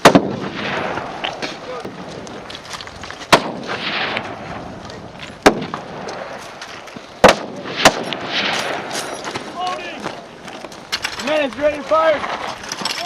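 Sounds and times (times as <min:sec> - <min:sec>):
gunshots: 0:00.0 - 0:02.2, 0:03.3 - 0:04.8, 0:05.4 - 0:06.6, 0:07.2 - 0:10.2.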